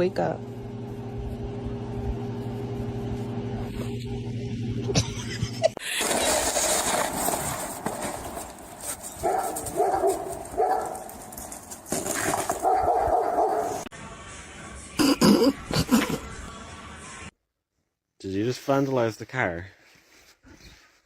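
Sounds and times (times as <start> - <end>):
steady hum: 0.0 - 5.8
dog barking: 9.2 - 11.2, 12.5 - 13.9.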